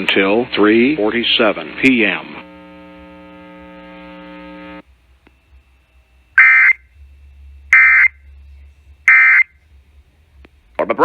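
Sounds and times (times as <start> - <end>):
digital data tone bursts: 6.4 - 6.9, 7.7 - 8.3, 9.1 - 9.6.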